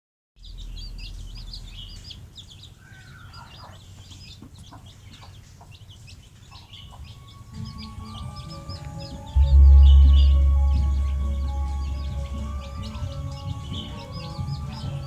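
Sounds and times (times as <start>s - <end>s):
birds chirping: 0.4s - 15.0s
low rumble: 8.2s - 14.2s.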